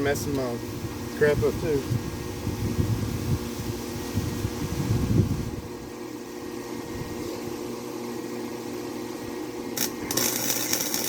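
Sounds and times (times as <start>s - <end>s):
welding machine humming: 6.3s - 11.0s
welding arc crackling hiss: 9.8s - 11.0s.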